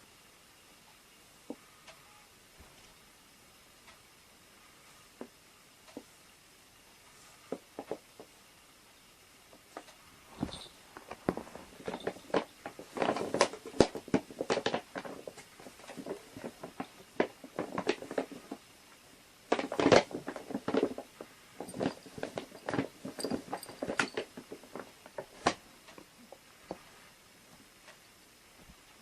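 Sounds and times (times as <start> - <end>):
taps knocks and scuffling: 9.5 - 18.6.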